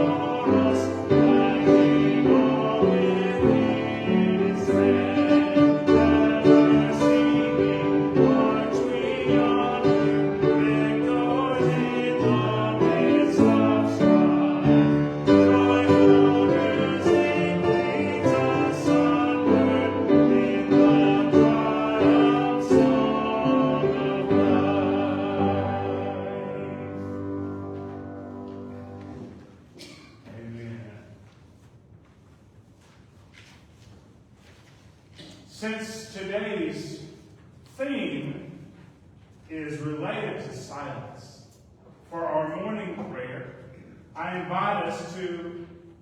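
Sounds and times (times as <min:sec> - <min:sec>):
person singing: 0:00.0 - 0:27.3
slow classical-style music: 0:00.0 - 0:46.0.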